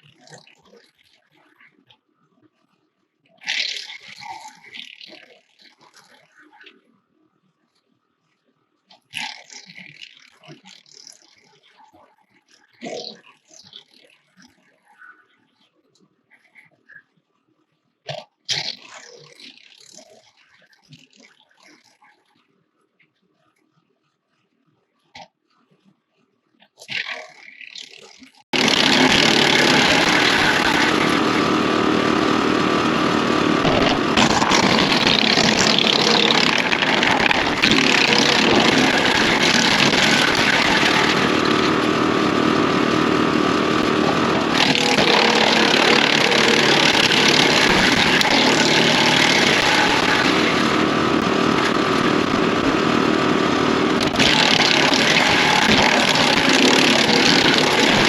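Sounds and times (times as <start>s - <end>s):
engine drone: 28.5s - 58.0s
wood chipper grinding branches: 28.5s - 58.0s.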